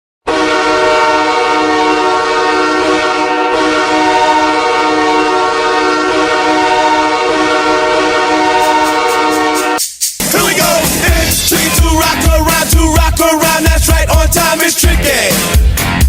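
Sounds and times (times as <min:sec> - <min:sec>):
hockey goal horn: 0:00.2 - 0:09.8.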